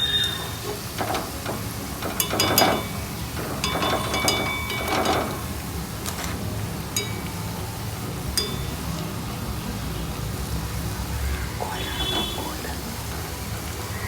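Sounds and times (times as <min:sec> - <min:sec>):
food frying in hot oil: 0:00.0 - 0:14.0
metal ladle clinking on iron pan: 0:00.4 - 0:09.1.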